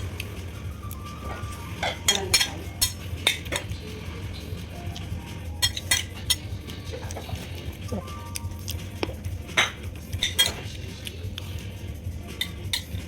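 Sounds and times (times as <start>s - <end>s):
cutlery clinking against plate: 1.8s - 3.8s, 5.6s - 7.5s, 9.5s - 11.1s, 12.3s - 13.0s.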